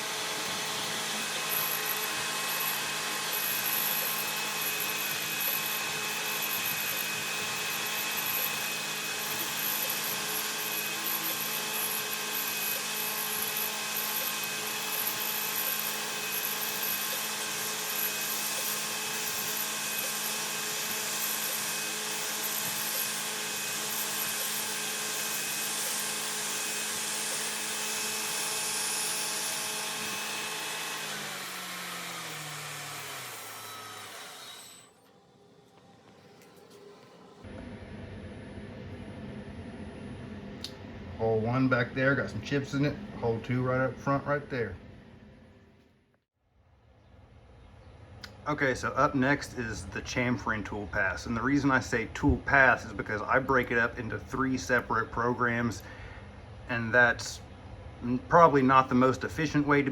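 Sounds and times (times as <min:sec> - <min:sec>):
milling machine motor hum and whine: 0:00.0 - 0:41.2.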